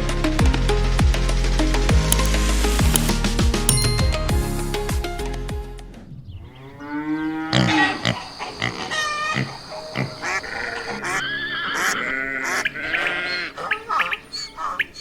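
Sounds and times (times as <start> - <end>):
farm animal calls: 6.4 - 15.0.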